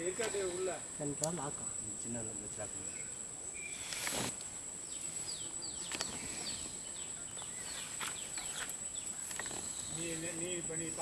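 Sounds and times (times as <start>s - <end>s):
bird chirping: 0.0s - 11.0s
high-pitched insect drone: 0.0s - 11.0s.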